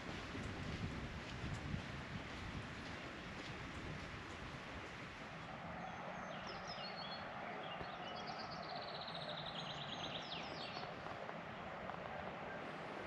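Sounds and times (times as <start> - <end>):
songbird chirping and trilling: 5.9 - 10.9.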